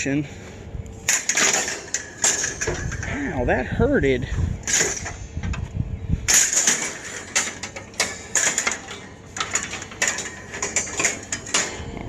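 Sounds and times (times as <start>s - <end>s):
sharp metal clanks and scrapes: 1.0s - 3.4s, 4.6s - 5.6s, 6.3s - 12.0s
scrap metal clattering and rattling: 1.0s - 3.6s, 4.2s - 12.0s.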